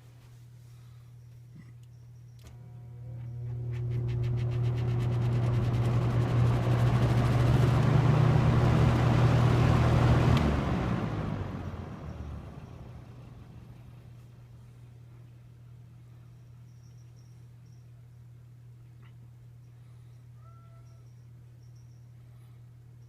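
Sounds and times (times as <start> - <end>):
box fan running: 1.8 - 20.4.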